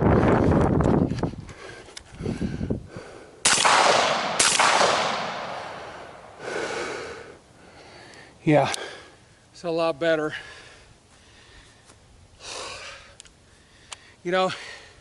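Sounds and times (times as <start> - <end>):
suppressed rifle shots echoing: 3.4 - 6.4.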